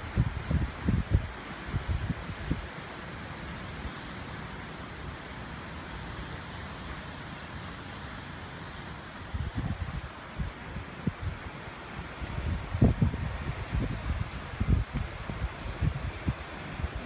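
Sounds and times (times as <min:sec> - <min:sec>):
strong wind rushing: 0:09.3 - 0:17.0.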